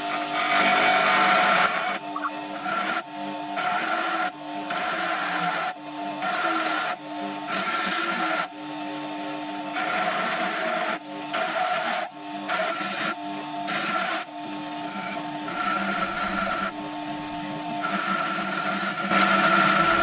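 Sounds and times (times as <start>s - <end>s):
angle grinder motor whine: 0.0s - 8.5s, 9.7s - 20.0s
disc grinding steel: 14.8s - 20.0s.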